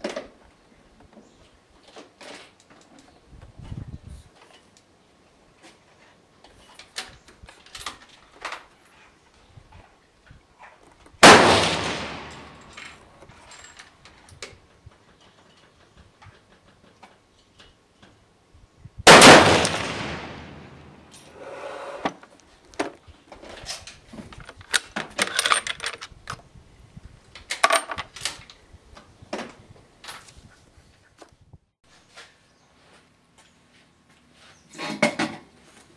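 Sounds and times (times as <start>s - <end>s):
rifle shots with echo: 11.2s - 12.8s, 19.1s - 21.1s.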